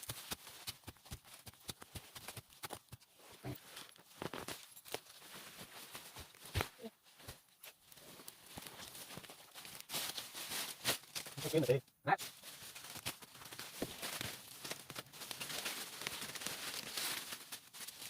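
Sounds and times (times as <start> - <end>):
knocks and scuffs: 0.0 - 3.5
rustling: 0.0 - 18.0.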